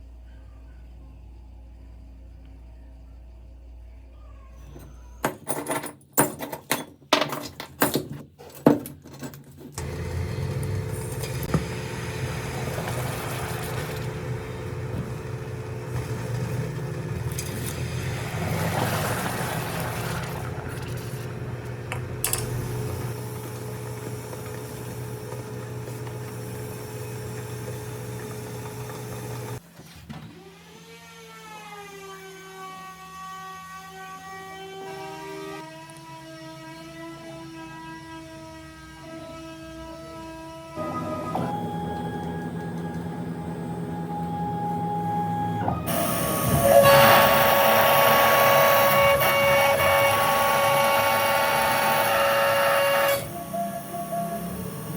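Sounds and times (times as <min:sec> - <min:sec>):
electric power tool humming: 0:09.8 - 0:29.6, 0:41.5 - 0:54.9.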